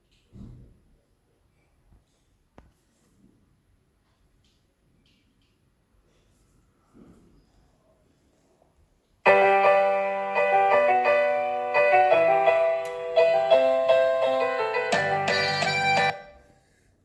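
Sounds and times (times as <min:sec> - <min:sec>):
piano music through laptop speakers: 0:09.2 - 0:16.5.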